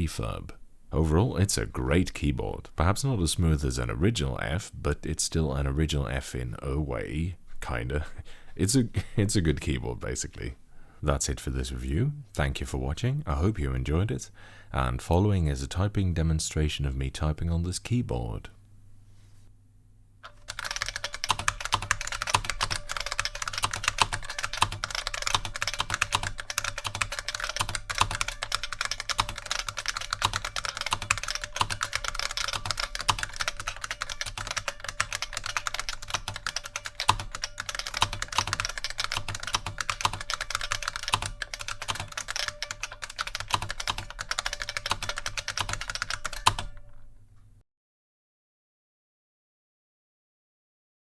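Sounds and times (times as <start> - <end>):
fast clicky keyboard typing: 20.3 - 47.1.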